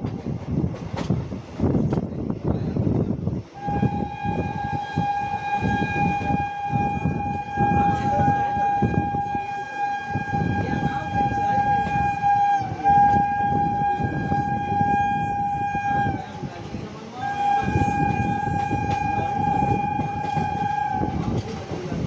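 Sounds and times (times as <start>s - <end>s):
train wheels rumbling and clattering: 0.0s - 22.0s
train horn blast: 3.6s - 16.5s, 17.2s - 21.8s.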